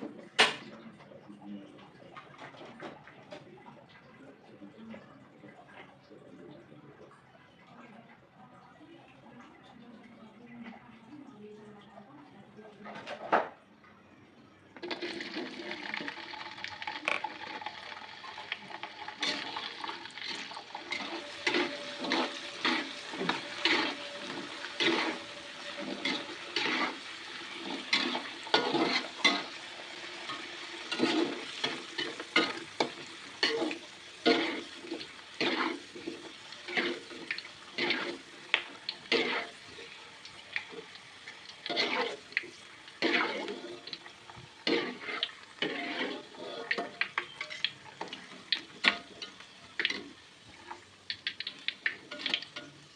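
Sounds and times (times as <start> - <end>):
food sizzling in a frying pan: 14.8 - 52.9
spatula scraping a pan: 14.8 - 52.9.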